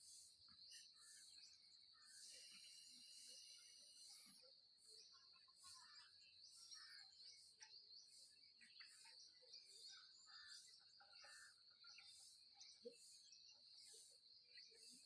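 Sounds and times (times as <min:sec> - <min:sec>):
faint birds chirping: 0:00.0 - 0:15.0.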